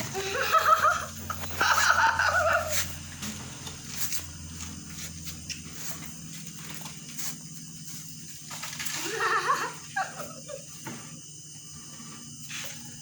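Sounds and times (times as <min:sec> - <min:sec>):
steady low hum: 0:00.0 - 0:13.0
puppies scuffling and tapping: 0:02.7 - 0:09.0.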